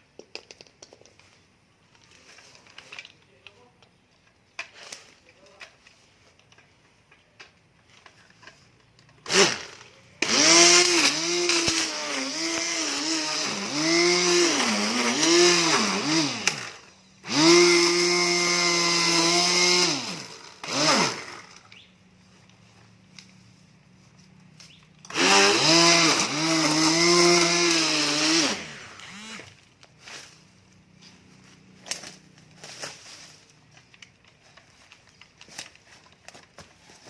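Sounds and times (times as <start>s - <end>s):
electric grass trimmer whine: 9.2s - 21.7s, 25.1s - 29.7s.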